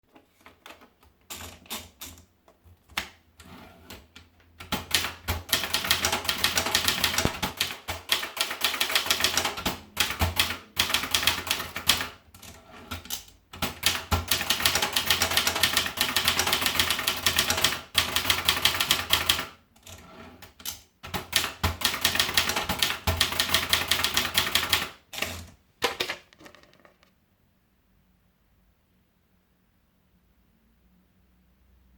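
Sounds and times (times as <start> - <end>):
typewriter typing: 2.9 - 27.1.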